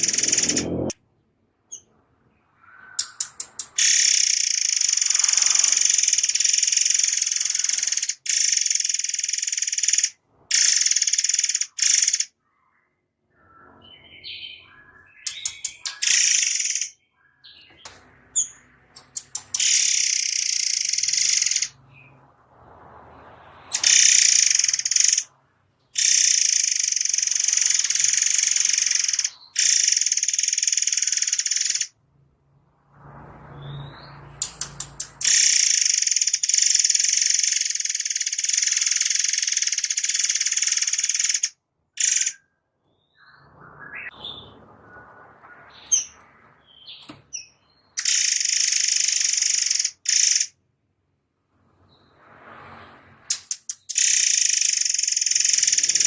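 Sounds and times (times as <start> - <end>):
soft bird chirps: 0.0 - 22.2
songbird high-pitched trills: 3.0 - 12.8, 13.4 - 21.8, 23.8 - 25.3, 26.0 - 31.9, 34.4 - 42.4, 46.8 - 50.5, 53.7 - 56.0.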